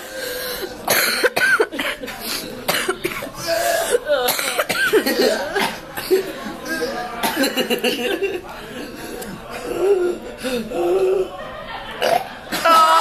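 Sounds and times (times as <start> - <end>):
person burping: 12.0 - 13.0.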